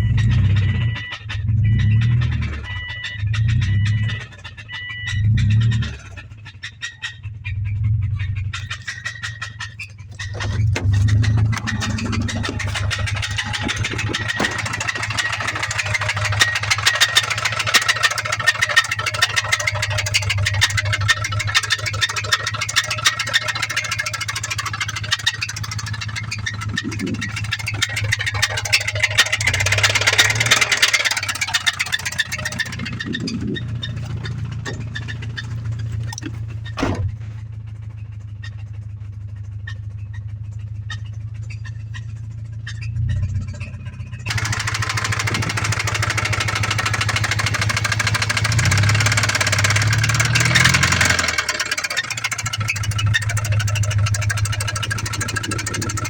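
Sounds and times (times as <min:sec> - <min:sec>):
engine running with metallic knocking: 0:00.0 - 0:56.0
sharp thump: 0:36.2 - 0:37.4.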